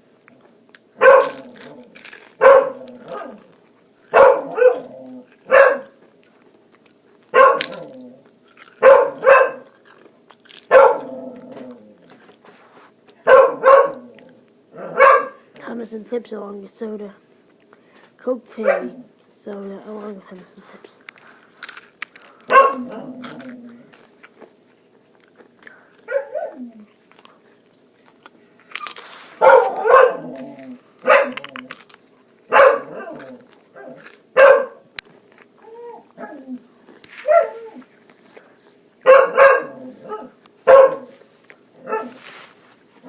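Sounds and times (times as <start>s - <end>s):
dog barking: 1.0s - 1.4s, 2.4s - 3.4s, 4.1s - 4.9s, 5.5s - 6.0s, 7.3s - 7.8s, 8.8s - 9.7s, 10.7s - 11.1s, 13.2s - 14.1s, 14.8s - 15.4s, 18.6s - 19.0s, 22.5s - 23.0s, 26.1s - 26.6s, 29.4s - 30.3s, 31.0s - 31.4s, 32.5s - 34.8s, 37.2s - 37.7s, 39.0s - 41.2s, 41.8s - 42.2s.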